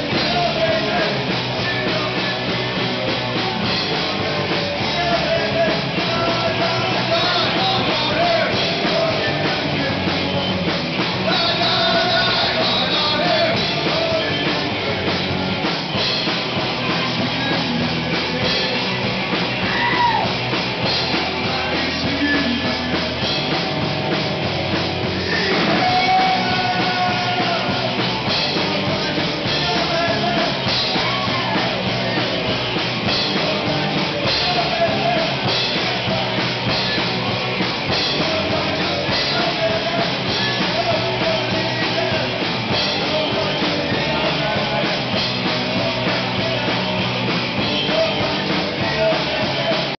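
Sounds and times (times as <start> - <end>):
person singing: 0.0 - 15.1, 16.8 - 23.6, 25.1 - 50.0
rock music with drum kit: 0.0 - 50.0.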